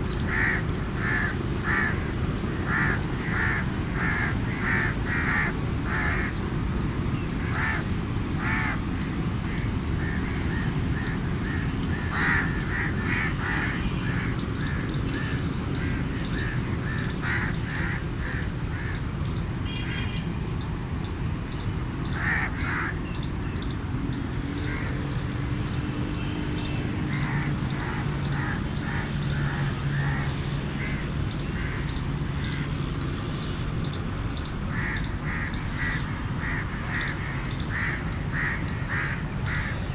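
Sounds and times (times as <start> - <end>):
crows cawing: 0.3 - 6.4, 7.3 - 19.1, 22.1 - 23.0, 24.6 - 25.0, 27.1 - 32.7, 34.7 - 39.9.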